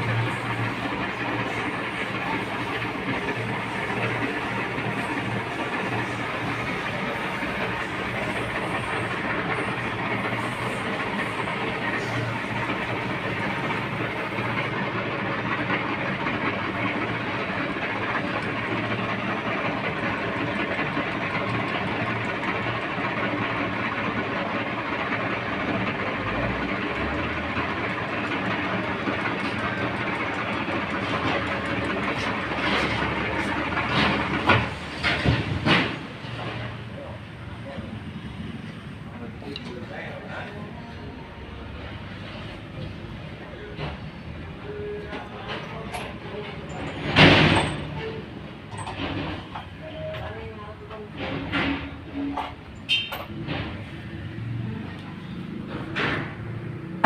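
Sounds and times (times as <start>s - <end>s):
metal lathe humming: 0.0s - 35.0s.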